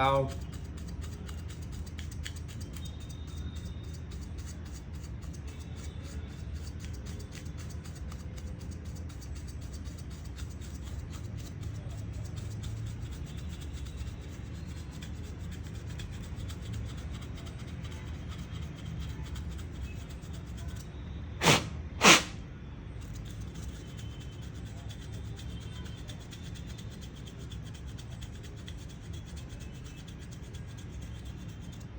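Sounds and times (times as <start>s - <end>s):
loud puffs of air: 21.4s - 22.4s.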